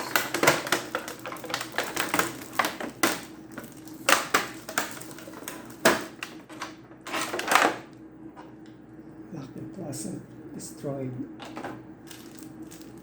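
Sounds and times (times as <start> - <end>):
plastic packaging crackling: 0.0 - 7.9, 11.4 - 13.0.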